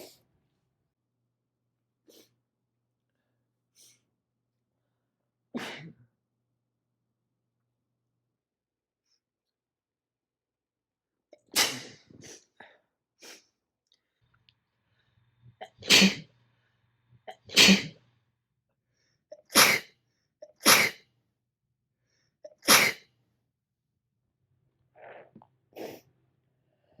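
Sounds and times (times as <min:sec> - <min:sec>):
person sneezing: 0:05.6 - 0:06.0, 0:11.4 - 0:12.4, 0:15.6 - 0:16.3, 0:17.4 - 0:18.0, 0:19.5 - 0:19.9, 0:20.5 - 0:21.0, 0:22.5 - 0:23.0.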